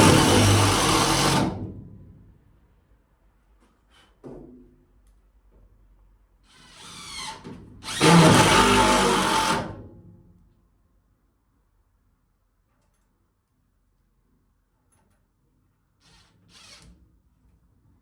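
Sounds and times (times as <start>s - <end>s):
power drill drilling into wood: 0.0s - 1.6s, 6.7s - 9.8s.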